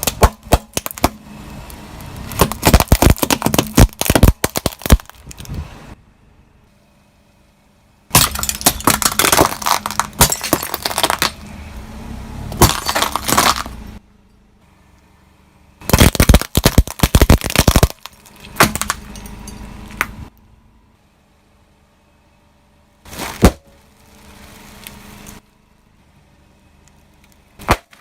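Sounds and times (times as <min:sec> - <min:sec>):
loud cracking and breaking: 0:00.0 - 0:01.2, 0:02.3 - 0:05.6, 0:08.1 - 0:11.4, 0:12.6 - 0:13.7, 0:15.8 - 0:19.1.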